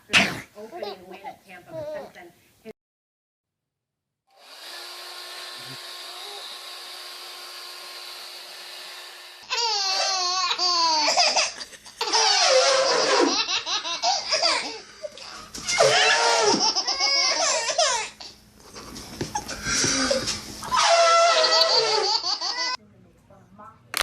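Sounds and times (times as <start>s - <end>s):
baby laughing: 9.5s - 18.4s, 21.2s - 22.8s.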